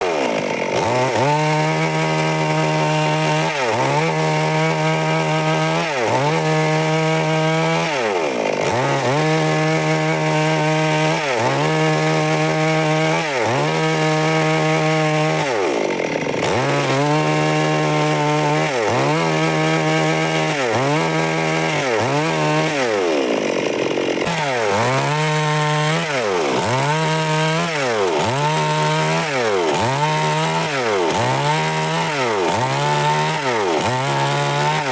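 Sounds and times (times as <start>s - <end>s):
chainsaw engine running: 0.0s - 34.9s.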